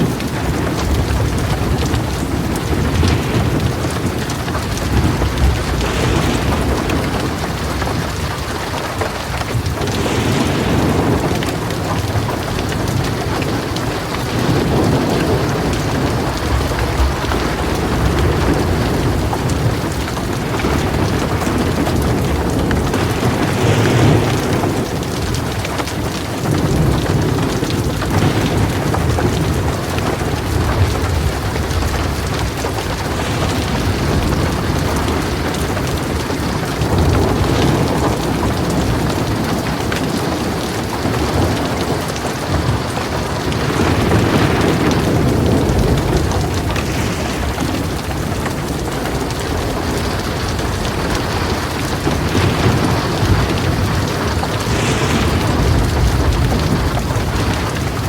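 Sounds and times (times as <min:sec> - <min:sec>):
heavy rain: 0:00.0 - 0:58.0
rolling thunder: 0:00.0 - 0:58.0.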